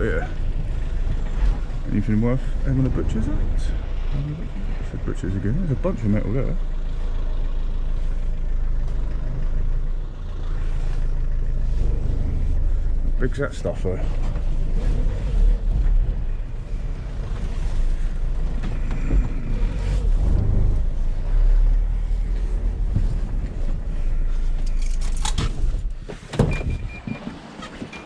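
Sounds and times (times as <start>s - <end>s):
vehicle rumble inside cabin: 0.0s - 28.0s
clunks: 11.6s - 28.0s.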